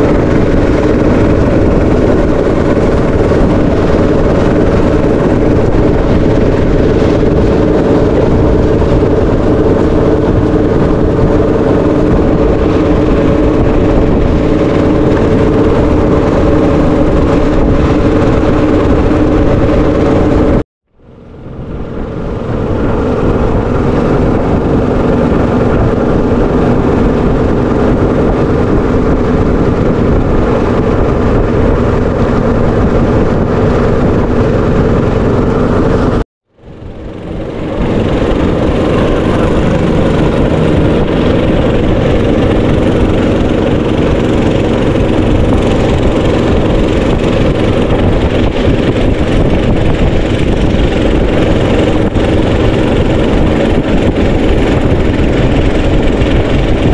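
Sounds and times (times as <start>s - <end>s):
boat motor droning: 0.0s - 56.9s.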